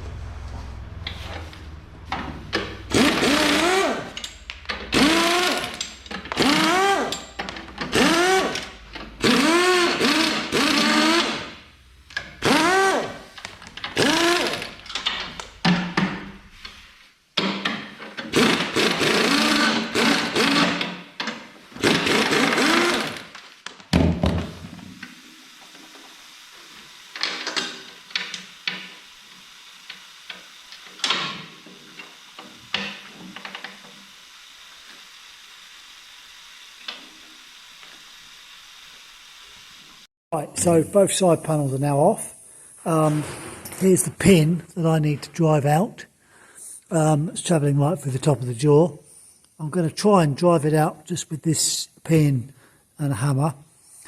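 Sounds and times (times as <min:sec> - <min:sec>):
power tool bursts: 0:02.5 - 0:11.7, 0:12.3 - 0:15.5, 0:18.2 - 0:23.6, 0:24.2 - 0:40.1.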